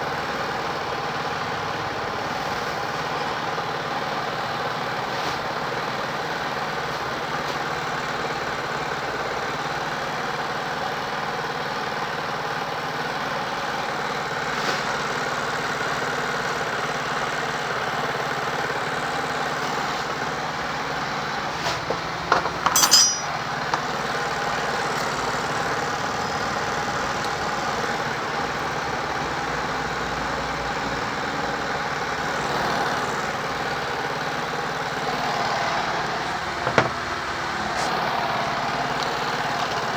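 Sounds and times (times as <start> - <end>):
engine-like hum: 17.6 - 39.9
sharp metallic clinks: 22.6 - 23.8.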